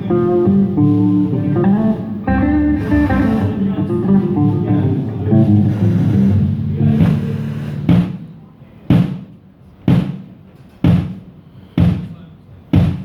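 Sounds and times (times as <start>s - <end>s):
electric guitar notes: 0.0s - 7.9s
bass guitar: 0.0s - 8.0s.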